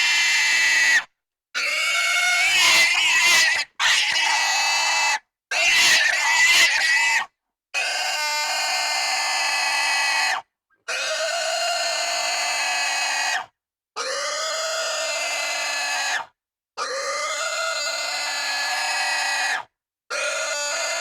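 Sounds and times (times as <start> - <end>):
pig squealing: 0.0 - 21.0.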